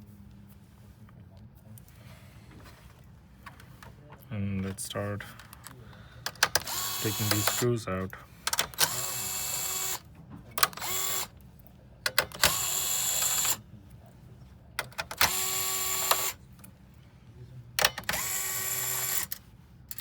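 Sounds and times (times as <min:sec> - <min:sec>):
electric screwdriver running: 0:06.4 - 0:07.7, 0:08.6 - 0:10.0, 0:10.6 - 0:11.3, 0:12.4 - 0:13.6, 0:15.1 - 0:16.4, 0:18.1 - 0:19.3.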